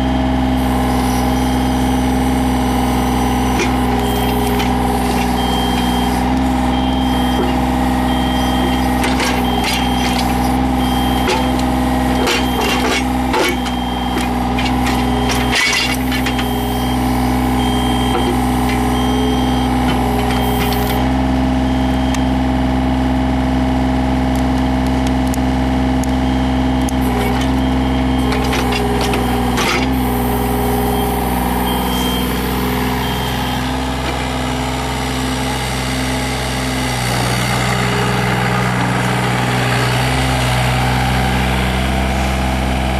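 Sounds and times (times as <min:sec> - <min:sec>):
excavator diesel engine running: 0:00.0 - 0:42.9
bucket knocking and scraping: 0:12.2 - 0:16.5.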